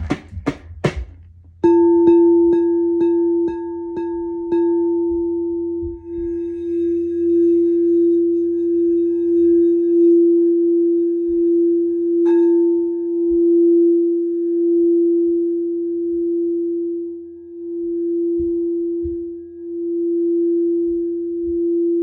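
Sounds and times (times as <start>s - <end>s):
singing bowl struck and ringing: 1.6s - 14.5s.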